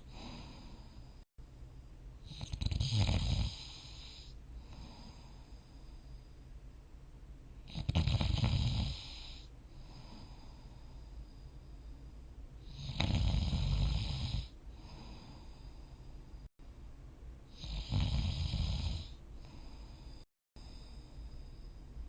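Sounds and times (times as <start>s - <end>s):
person snoring: 0.0s - 1.2s, 2.3s - 5.6s, 7.7s - 11.1s, 12.6s - 15.8s, 17.5s - 21.3s
quiet breathing: 0.0s - 1.3s, 2.4s - 6.9s, 8.8s - 16.5s, 17.4s - 22.0s.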